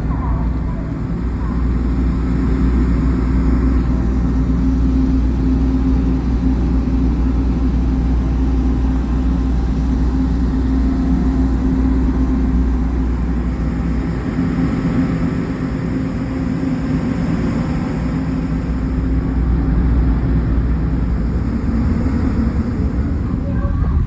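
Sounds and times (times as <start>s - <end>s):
large engine droning: 0.0s - 24.0s
steady hum: 0.0s - 24.0s.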